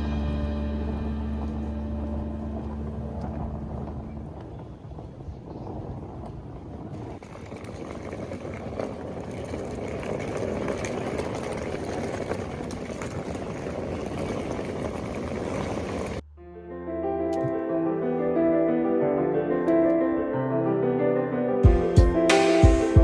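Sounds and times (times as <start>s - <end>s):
piano music: 0.0s - 4.2s, 16.2s - 23.0s
engine rumble: 0.0s - 18.0s
noisy rush: 0.0s - 18.8s.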